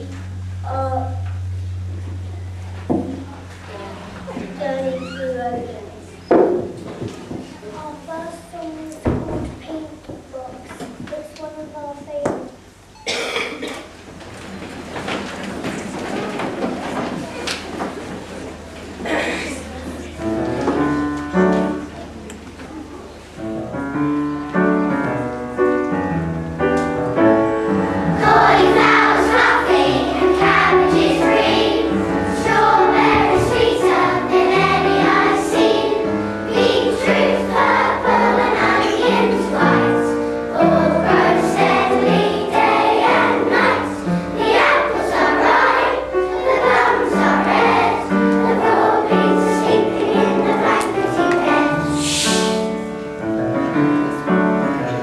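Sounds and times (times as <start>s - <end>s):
musical accompaniment: 23.4s - 55.0s
children's choir singing: 27.1s - 55.0s.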